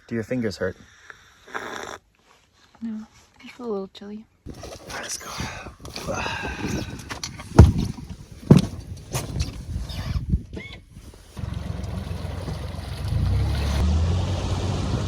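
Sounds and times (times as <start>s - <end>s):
hollow thumps and knocks: 4.5s - 9.8s
boat motor humming: 11.2s - 15.0s.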